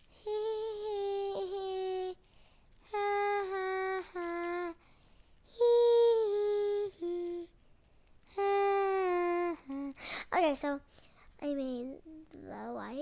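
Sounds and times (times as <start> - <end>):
girl humming long notes: 0.2 - 2.2, 5.6 - 7.5, 8.4 - 9.9.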